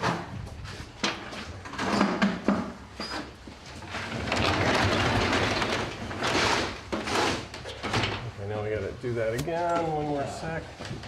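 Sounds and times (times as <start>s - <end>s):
garage door rattling along tracks: 3.9s - 8.2s.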